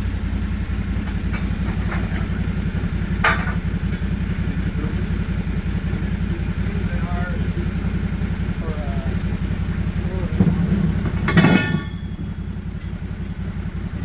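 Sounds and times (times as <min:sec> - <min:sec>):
engine idling: 0:00.0 - 0:14.0
knocks: 0:10.3 - 0:12.9.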